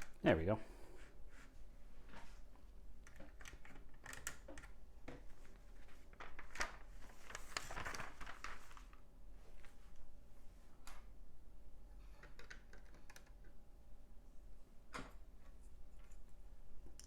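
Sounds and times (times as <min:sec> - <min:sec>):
plastic bricks clicking: 0:12.2 - 0:13.5.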